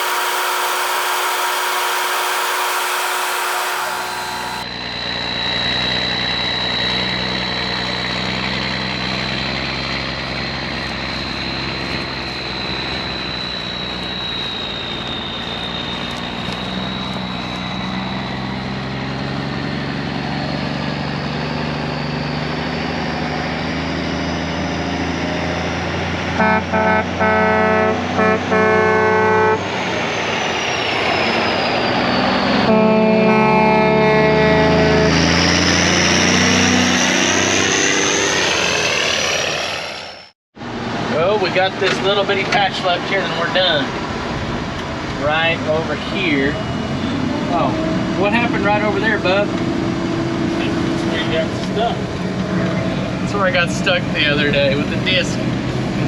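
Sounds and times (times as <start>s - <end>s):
horn honking: 0.0s - 4.7s, 26.4s - 29.7s, 32.6s - 35.6s
combine harvester whining: 0.0s - 56.0s.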